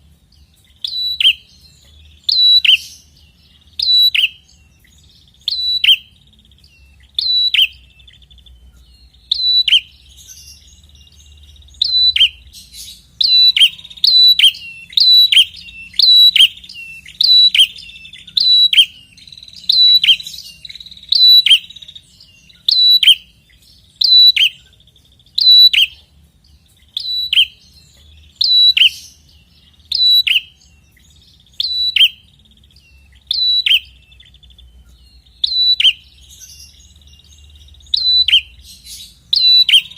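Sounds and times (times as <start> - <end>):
bird calling high sharp notes: 11.7 - 24.7, 37.7 - 39.9.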